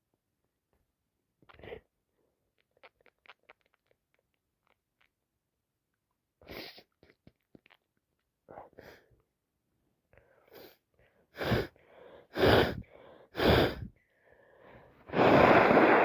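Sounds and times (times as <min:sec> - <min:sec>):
faint mouth clicks: 0:02.6 - 0:05.1
person sniffing congested nose: 0:06.4 - 0:07.2, 0:10.4 - 0:13.9, 0:15.0 - 0:16.0.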